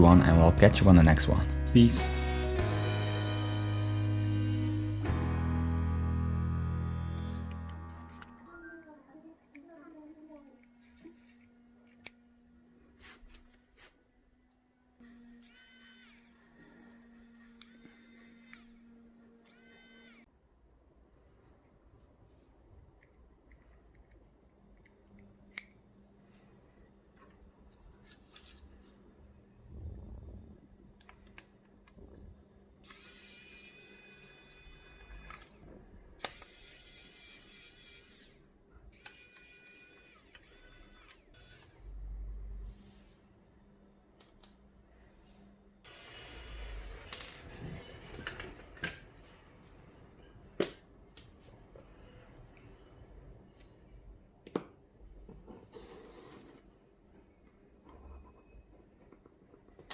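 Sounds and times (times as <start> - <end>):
small motor whirring: 15.0 - 20.3, 32.8 - 35.6, 36.2 - 42.2, 45.9 - 47.1
screwdriver clicks and taps: 34.9 - 35.6, 54.4 - 54.7.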